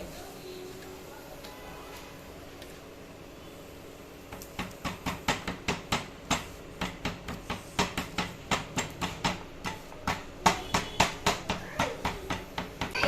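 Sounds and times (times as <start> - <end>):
wooden masher knocking on metal pan: 4.6 - 13.0.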